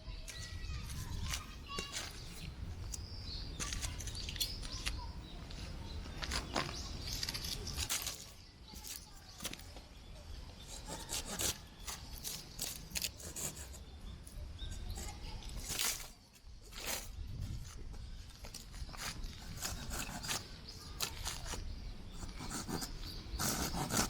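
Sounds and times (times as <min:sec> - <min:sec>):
rustling handling noises: 0:00.2 - 0:09.9, 0:14.9 - 0:23.2
wind buffeting microphone: 0:16.5 - 0:24.0.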